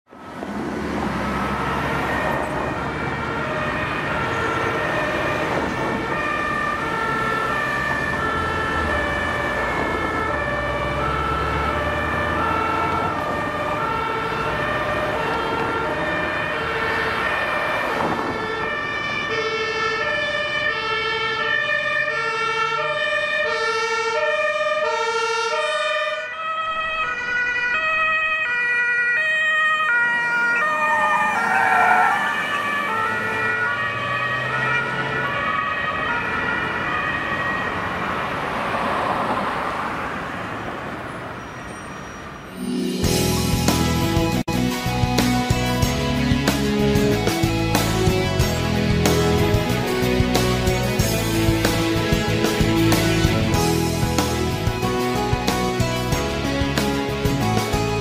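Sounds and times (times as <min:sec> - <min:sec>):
engine and road rumble: 0:00.1 - 0:58.0
two-tone siren: 0:00.8 - 0:38.9.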